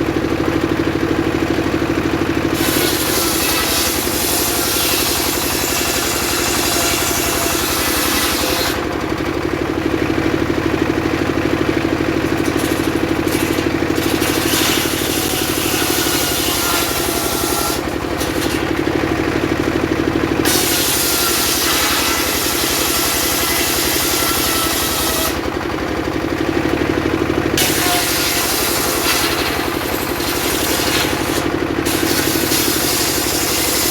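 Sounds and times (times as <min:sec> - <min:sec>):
saw engine running: 0:00.0 - 0:33.9
saw blade cutting wood: 0:02.4 - 0:09.1, 0:12.2 - 0:25.6, 0:27.5 - 0:33.9.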